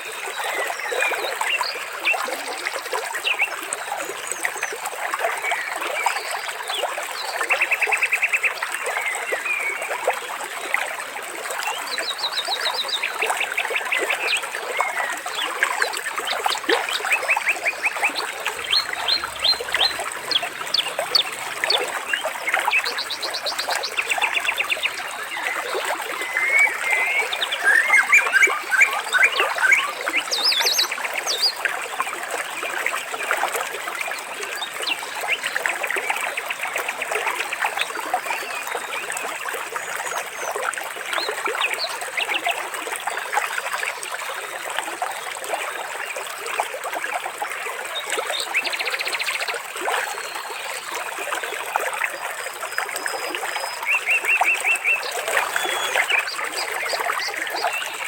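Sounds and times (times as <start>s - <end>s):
water trickling: 9.8s - 48.3s
birds singing: 16.3s - 31.6s, 53.0s - 58.0s.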